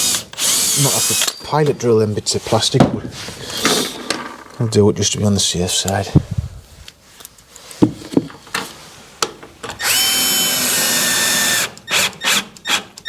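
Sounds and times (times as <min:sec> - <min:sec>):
power drill whining: 0:00.0 - 0:01.6, 0:09.8 - 0:13.0
handling clicks and knocks: 0:07.3 - 0:09.6.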